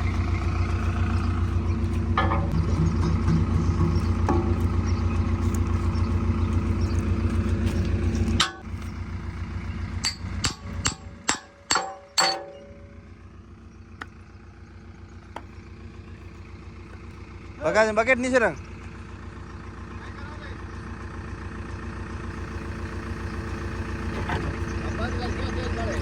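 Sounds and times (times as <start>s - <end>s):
diesel engine running: 0.0s - 26.0s
ringing metal clangs: 2.2s - 4.6s, 8.4s - 8.7s, 10.0s - 13.0s.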